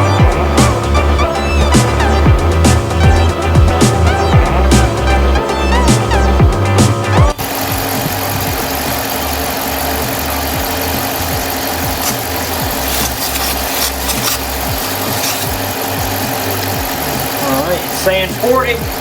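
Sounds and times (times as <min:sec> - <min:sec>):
air compressor running: 0:07.4 - 0:19.0.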